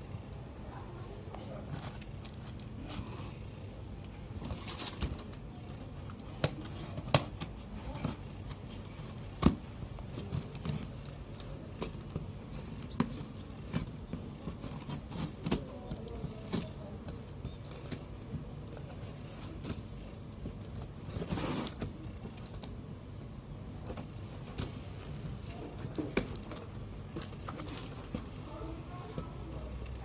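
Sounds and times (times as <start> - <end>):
box contents clicking and knocking: 4.4 - 22.8.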